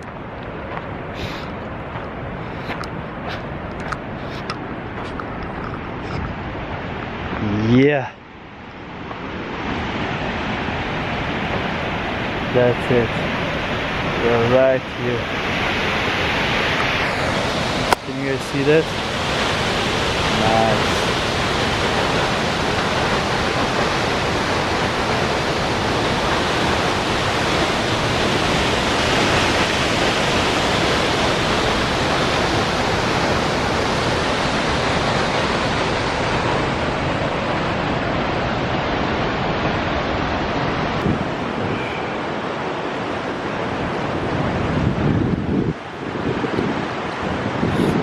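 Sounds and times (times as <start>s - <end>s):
waterfall rushing: 9.4s - 44.8s.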